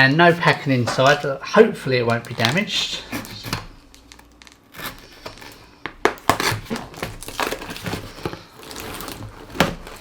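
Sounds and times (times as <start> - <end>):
cardboard box rustling: 6.2 - 10.0.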